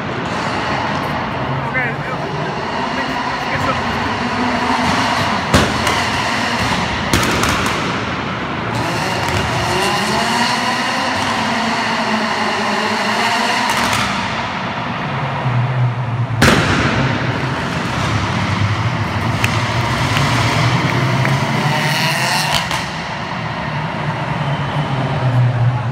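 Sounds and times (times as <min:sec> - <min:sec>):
car engine revving: 0:00.0 - 0:25.9
loud gunshot-like bangs: 0:05.4 - 0:08.2, 0:16.4 - 0:18.2.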